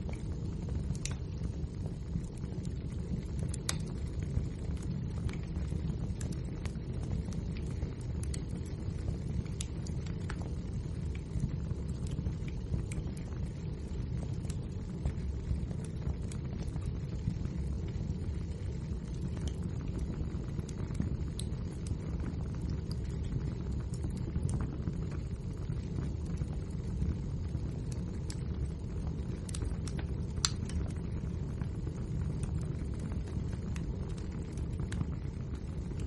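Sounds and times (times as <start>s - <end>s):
fire rumbling: 0.0s - 36.0s
wood crackling and popping: 0.0s - 36.0s.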